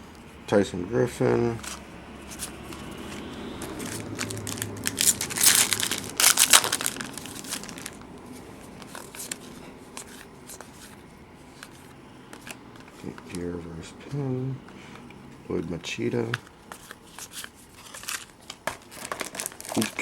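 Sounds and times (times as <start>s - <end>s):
foil wrapper crinkling and tearing: 3.7s - 8.1s, 16.7s - 20.0s.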